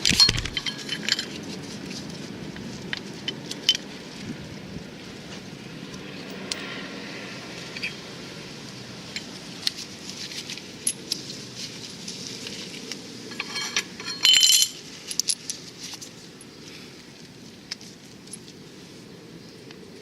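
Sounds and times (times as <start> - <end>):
metal tools clinking: 0.0 - 1.9, 7.7 - 8.0, 13.2 - 16.5
ringing metallic clink: 0.1 - 1.4, 13.3 - 15.4.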